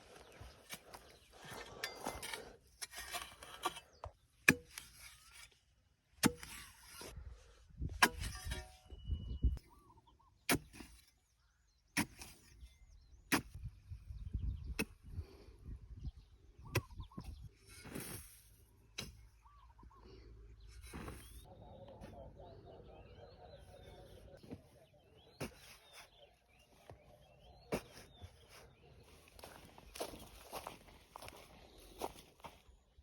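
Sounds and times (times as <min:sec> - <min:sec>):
soil scraped and shovelled: 0:00.0 - 0:09.0, 0:10.5 - 0:13.6, 0:16.7 - 0:22.2, 0:23.3 - 0:32.6
tool striking hard ground: 0:00.7 - 0:05.5, 0:06.2 - 0:07.0, 0:07.8 - 0:09.0, 0:16.7 - 0:19.3
faint bird chirps: 0:08.8 - 0:11.9, 0:15.9 - 0:17.6, 0:19.2 - 0:32.7.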